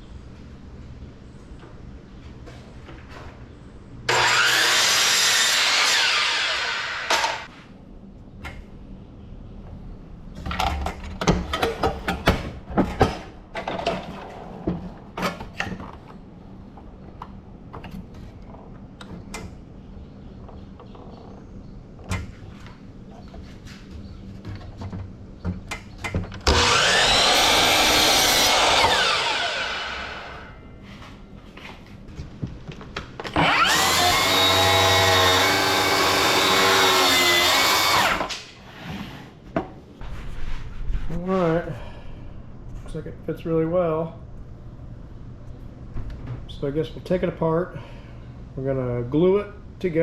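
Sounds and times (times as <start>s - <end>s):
electric miter saw cutting plywood: 4.1s - 7.5s, 26.4s - 30.6s, 33.3s - 38.5s.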